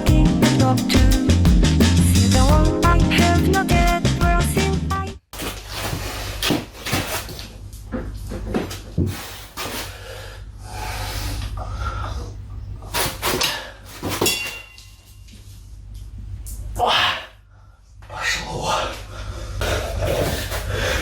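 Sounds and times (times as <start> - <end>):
music: 0.0 - 5.2.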